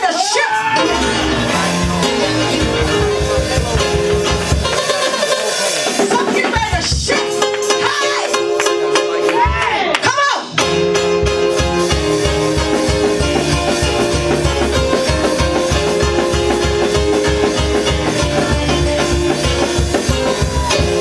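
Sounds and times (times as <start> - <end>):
upbeat instrumental music: 0.0 - 21.0.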